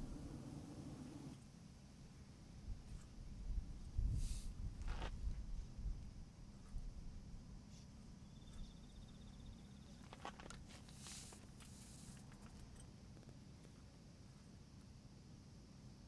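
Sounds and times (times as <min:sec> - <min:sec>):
wind on microphone: 0:03.4 - 0:06.1.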